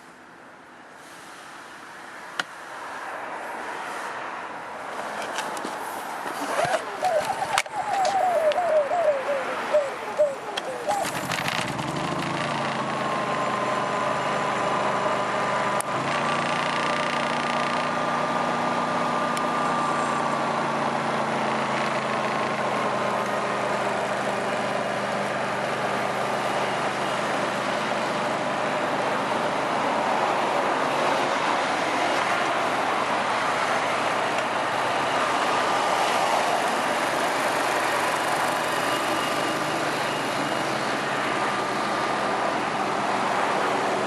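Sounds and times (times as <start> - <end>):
generator engine running: 6.4 - 30.8.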